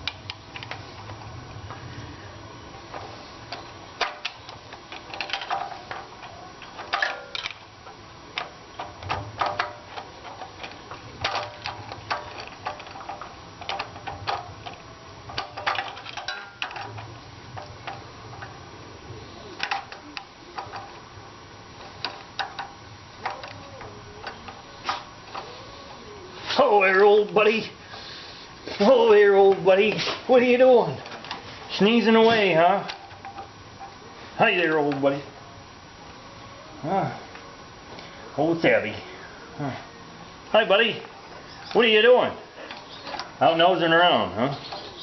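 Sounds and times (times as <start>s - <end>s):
hand tools clicking and clinking: 2.9s - 18.5s, 21.8s - 25.6s.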